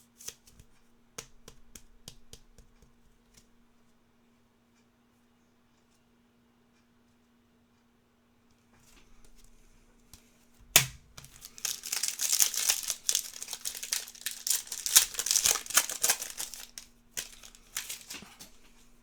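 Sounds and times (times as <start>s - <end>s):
foil pack tearing open: 10.8s - 18.5s
wrapper crinkling: 10.8s - 18.8s.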